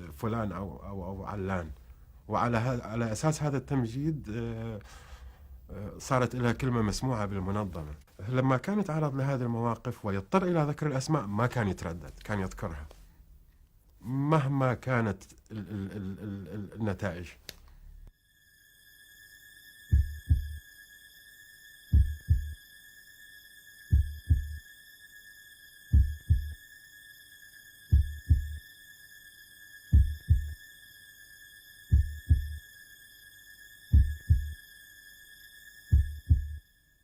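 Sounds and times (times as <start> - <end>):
heartbeat double thump: 19.9 - 20.6, 21.9 - 22.6, 23.9 - 24.6, 25.9 - 26.6, 27.9 - 28.6, 29.9 - 30.6, 31.9 - 32.6, 33.9 - 34.6, 35.9 - 36.6.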